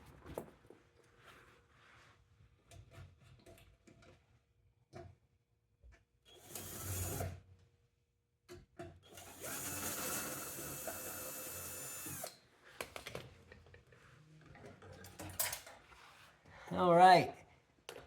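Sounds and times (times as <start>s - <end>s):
electric drill whine: 9.2s - 12.3s.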